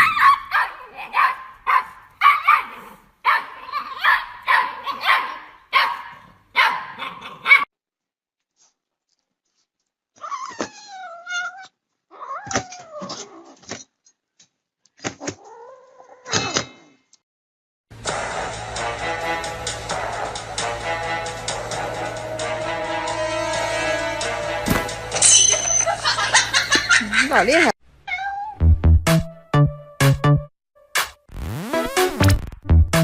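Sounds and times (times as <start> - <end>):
dog barking: 0.0 - 7.7
cat meowing: 10.2 - 13.1, 28.0 - 28.6.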